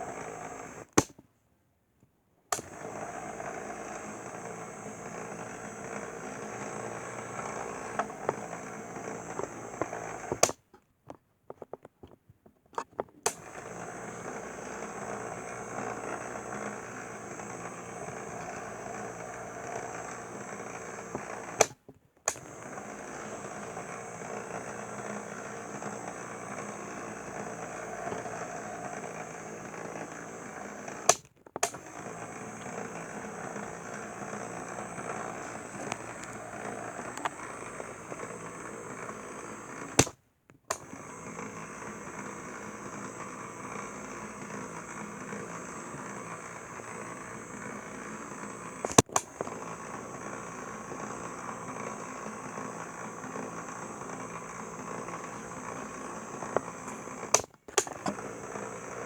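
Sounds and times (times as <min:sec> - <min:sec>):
turntable motor whirring: 0:00.0 - 0:01.1, 0:02.5 - 0:10.6, 0:13.2 - 0:59.0
sharp click: 0:02.5 - 0:02.8, 0:39.9 - 0:40.9, 0:48.8 - 0:49.4, 0:56.6 - 0:58.2.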